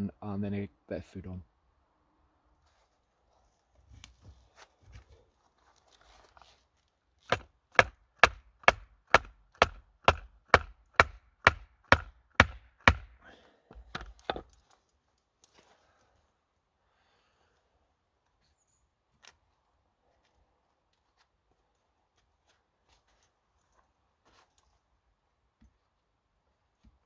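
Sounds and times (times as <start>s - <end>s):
wood being chopped: 7.3s - 13.2s, 13.8s - 14.5s.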